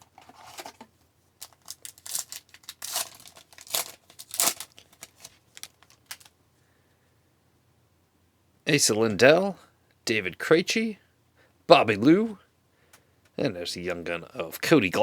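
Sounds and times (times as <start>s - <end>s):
foil wrapper tearing and crinkling: 1.4s - 6.3s.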